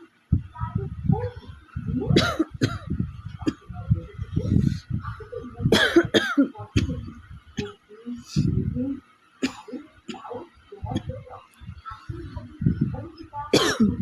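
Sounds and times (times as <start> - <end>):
person coughing: 2.1 - 3.6, 5.7 - 7.0, 13.5 - 14.0.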